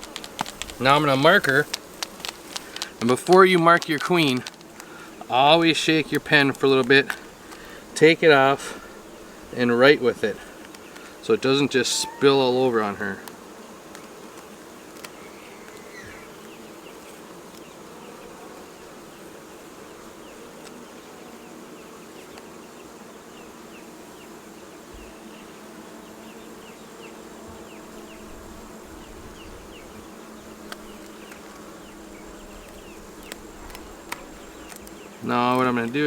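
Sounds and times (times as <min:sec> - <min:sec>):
honeybees buzzing: 0:00.0 - 0:36.0.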